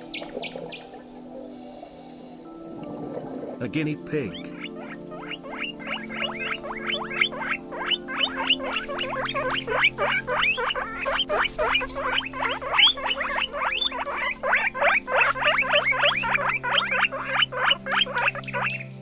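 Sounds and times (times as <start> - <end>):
guinea pig squeaking: 4.4 - 18.9.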